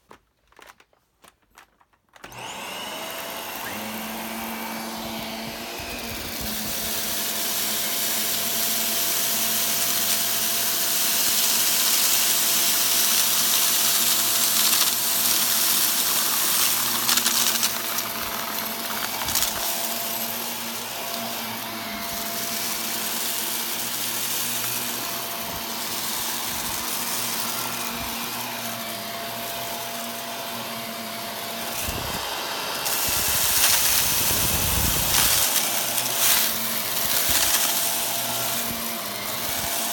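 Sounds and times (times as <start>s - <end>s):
vacuum cleaner running: 2.2s - 39.9s.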